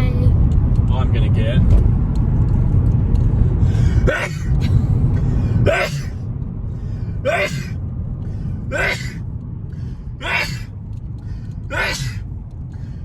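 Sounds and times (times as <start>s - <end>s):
person sneezing: 4.0s - 4.9s, 5.6s - 6.2s, 7.3s - 7.8s, 8.7s - 9.2s, 10.2s - 10.7s, 11.7s - 12.2s.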